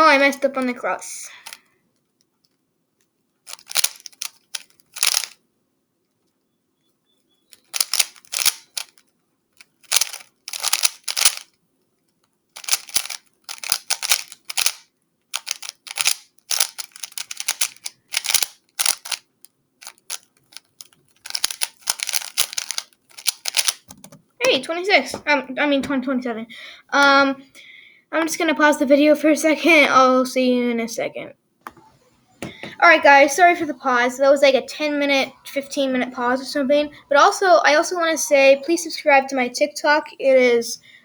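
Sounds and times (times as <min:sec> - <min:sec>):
puzzle cube clicking: 0:03.5 - 0:05.4, 0:07.5 - 0:09.0, 0:09.6 - 0:11.5, 0:12.6 - 0:14.8, 0:15.4 - 0:24.6.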